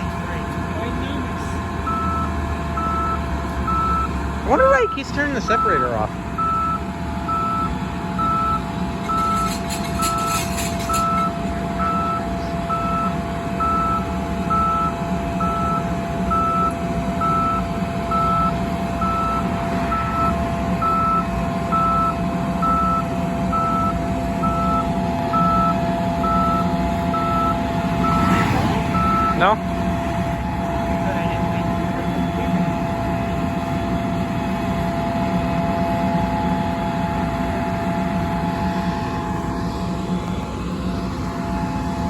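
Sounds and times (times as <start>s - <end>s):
low engine hum: 0.0s - 42.0s
electronic warning beeper: 1.9s - 29.7s.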